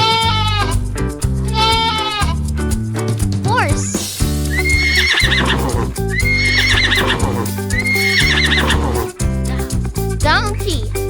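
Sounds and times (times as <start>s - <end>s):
background music: 0.0s - 11.0s
horse whinnying: 4.5s - 9.1s.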